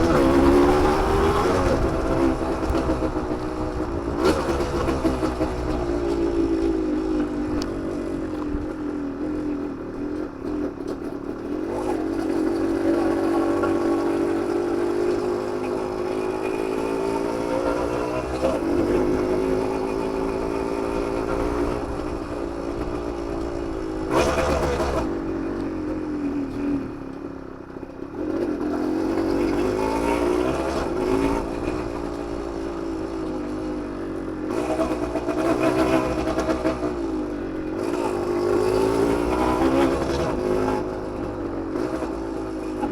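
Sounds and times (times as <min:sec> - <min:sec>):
two-stroke engine revving: 0:00.0 - 0:42.9.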